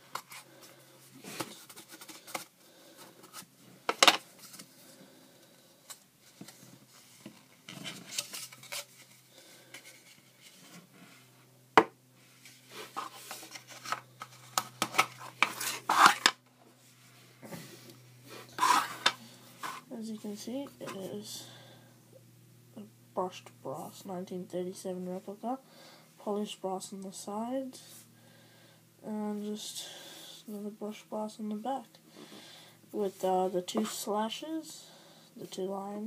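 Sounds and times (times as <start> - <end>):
packaging rubbing and scraping: 12.6 - 16.4, 18.5 - 19.9.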